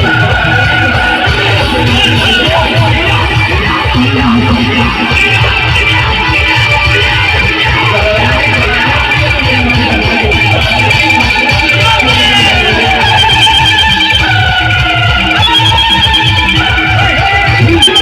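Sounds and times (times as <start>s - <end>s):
guitar lead: 0.0s - 18.0s
heavy bass beat: 0.0s - 18.0s
loud band music: 0.0s - 18.0s.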